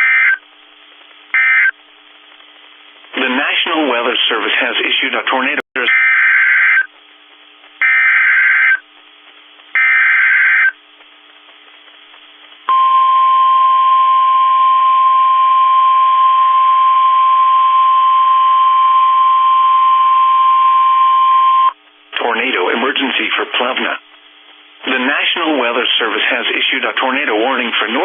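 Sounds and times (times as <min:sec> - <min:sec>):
steady warning alarm tone: 0:01.4 - 0:01.7, 0:05.9 - 0:06.9, 0:07.8 - 0:08.8, 0:09.8 - 0:10.8, 0:12.7 - 0:21.7
digital data bursts: 0:01.4 - 0:01.8, 0:07.8 - 0:08.8, 0:09.7 - 0:10.8.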